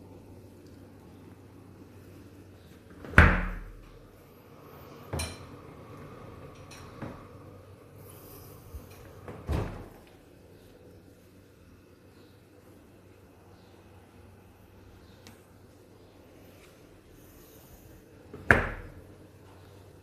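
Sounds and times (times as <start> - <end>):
heavy door thud: 9.2 - 10.0.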